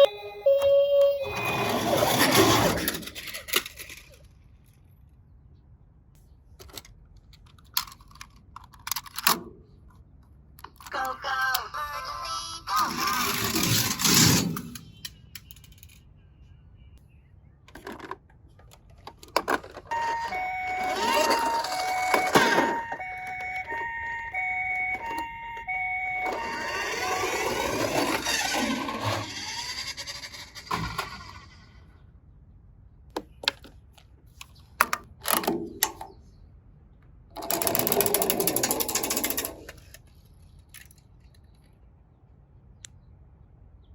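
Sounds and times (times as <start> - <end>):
toy cars rolling down plastic slide: 1.4 - 4.4, 12.7 - 14.8, 19.1 - 23.6, 26.2 - 31.8, 37.4 - 40.0
toy cars clicking together: 2.8 - 4.8, 6.6 - 9.4, 12.7 - 16.1, 27.1 - 31.6, 37.4 - 41.7.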